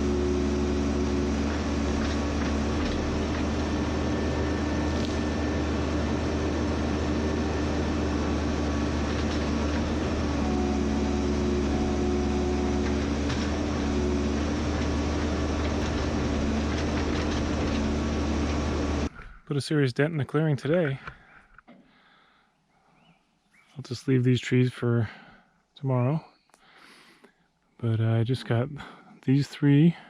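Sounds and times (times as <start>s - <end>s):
large engine running: 0.0s - 19.1s.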